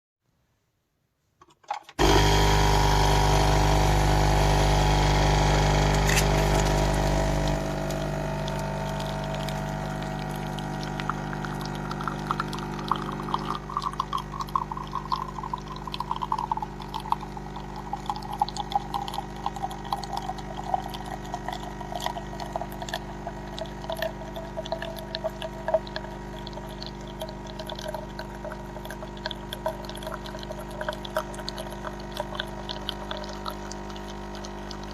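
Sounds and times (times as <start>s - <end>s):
coffee machine pump buzzing: 1.7s - 34.9s
coffee sputtering into cup: 2.0s - 34.9s.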